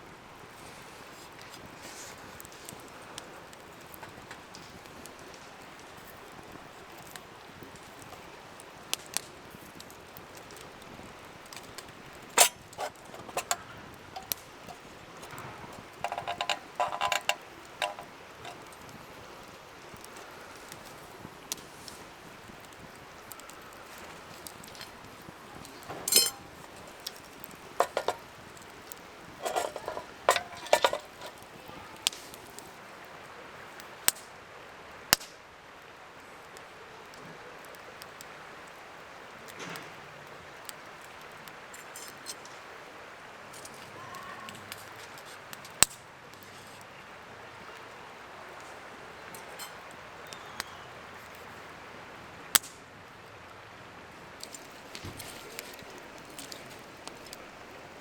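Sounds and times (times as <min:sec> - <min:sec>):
steady background hiss: 0:00.0 - 0:58.0
camping gear clinking and knocking: 0:11.4 - 0:20.2, 0:24.1 - 0:32.2, 0:49.4 - 0:49.9, 0:54.4 - 0:58.0.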